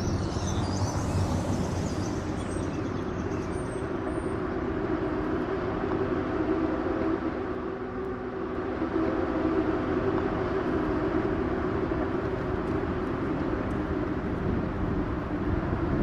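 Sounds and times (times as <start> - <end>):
faint high chirping: 0.0 - 4.4
steady rumbling noise: 0.0 - 16.0.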